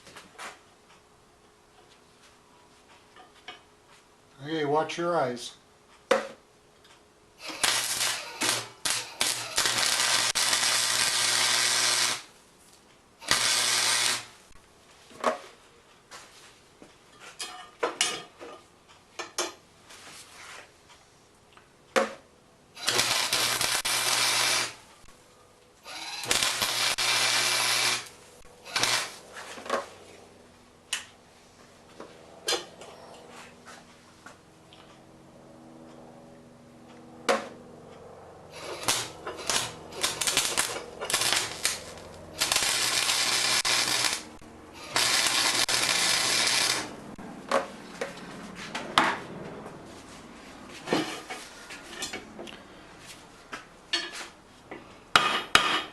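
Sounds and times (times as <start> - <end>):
welding arc crackling and hissing: 7.4 - 12.3, 13.2 - 14.5, 22.8 - 24.8, 25.9 - 29.2, 38.6 - 47.1
steady welder hum: 7.4 - 14.6, 22.7 - 31.1, 37.3 - 48.1.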